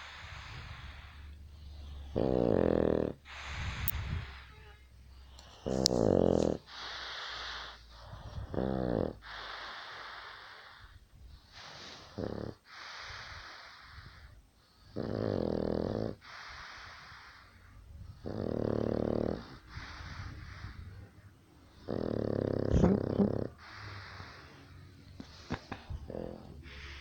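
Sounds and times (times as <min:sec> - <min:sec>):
person snoring: 0:00.0 - 0:04.4, 0:05.4 - 0:11.0, 0:11.6 - 0:27.0
breathy hissing breaths: 0:00.0 - 0:27.0.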